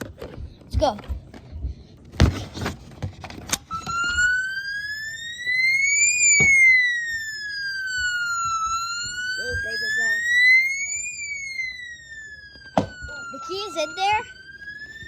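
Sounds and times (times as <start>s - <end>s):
knocks from handling alarm: 3.5s - 4.5s, 6.2s - 7.3s, 7.9s - 11.2s, 12.5s - 14.2s
electronic siren wailing: 3.6s - 15.0s.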